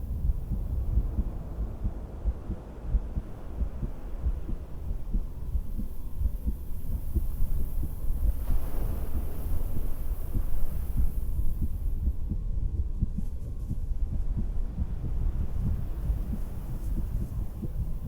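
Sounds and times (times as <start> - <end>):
heartbeat through stethoscope: 0.0 - 18.0.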